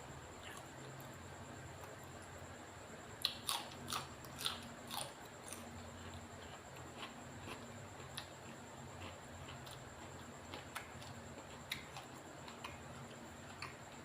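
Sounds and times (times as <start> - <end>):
person chewing and smacking: 3.2 - 14.0.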